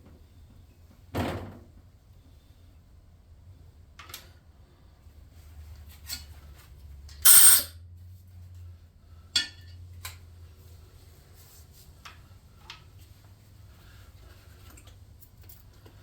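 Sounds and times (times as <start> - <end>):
sharp metallic click: 7.3 - 7.7.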